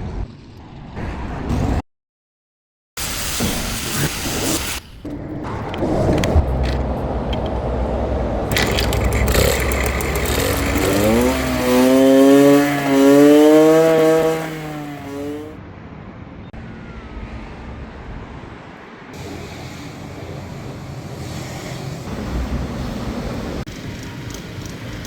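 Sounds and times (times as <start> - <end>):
two-stroke motorcycle engine revving: 7.4 - 15.6.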